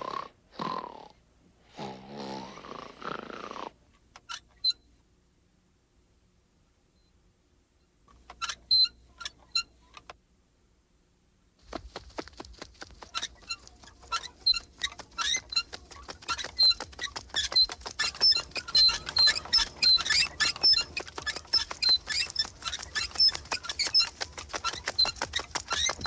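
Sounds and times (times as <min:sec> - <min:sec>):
swings squeaking: 0:08.3 - 0:09.7, 0:13.0 - 0:26.0.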